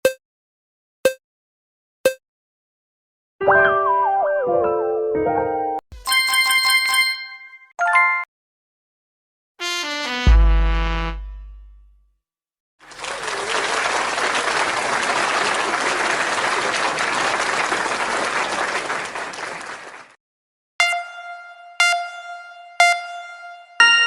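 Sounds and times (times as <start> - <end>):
crowd applauding: 12.8 - 20.2.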